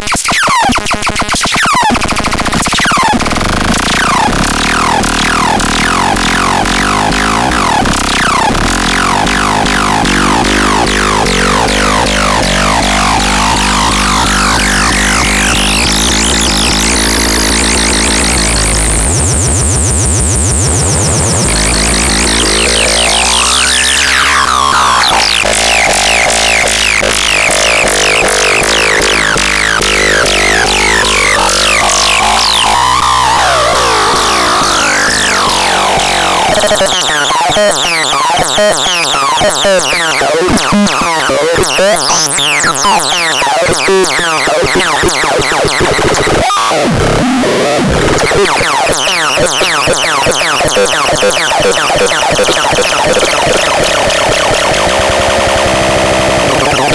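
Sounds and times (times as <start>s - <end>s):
glitchy clicks and chirps: 0.0s - 56.9s
synthesizer tones sliding: 3.8s - 56.9s
low synth drone: 4.2s - 37.3s.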